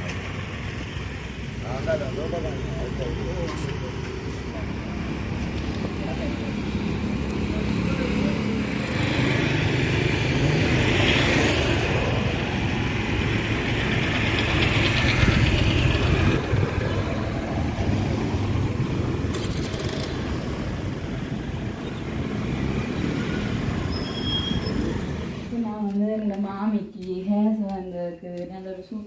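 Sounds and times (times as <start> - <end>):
road and wind noise: 0.0 - 29.0
vehicle engine running: 12.2 - 21.0.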